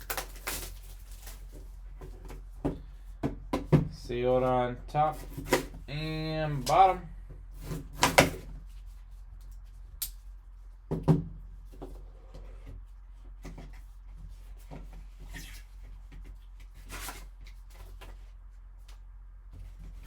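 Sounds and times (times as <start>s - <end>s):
cardboard and wrapping rustling: 0.0s - 4.0s, 5.0s - 20.0s
knock on cardboard box: 10.9s - 11.3s.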